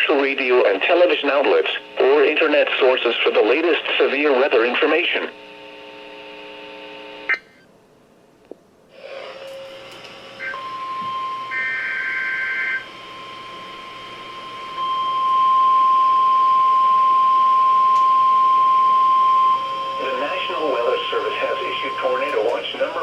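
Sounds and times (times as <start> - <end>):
radio hiss: 0.0 - 7.4, 19.6 - 23.0
click: 9.9 - 10.2, 17.9 - 18.1
higher tones: 10.4 - 23.0
single-pitch alarm tone: 10.4 - 23.0.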